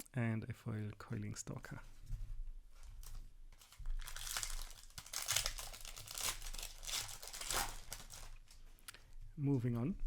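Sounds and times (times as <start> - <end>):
foil wrapper crinkling: 3.0 - 8.6.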